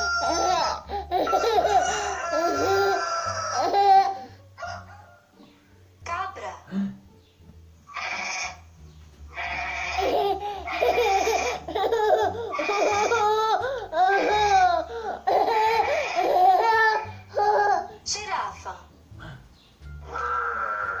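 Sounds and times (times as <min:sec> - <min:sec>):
goat bleating: 0:07.9 - 0:08.6, 0:09.3 - 0:10.1, 0:20.0 - 0:21.0.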